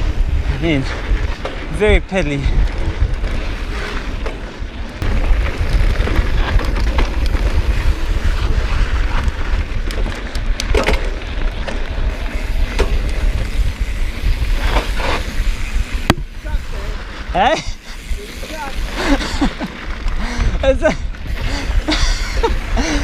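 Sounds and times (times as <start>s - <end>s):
wind rumbling on microphone: 0.0s - 23.0s
tyre noise on dirt: 0.1s - 23.0s
sharp knocks from bike: 10.6s - 11.8s.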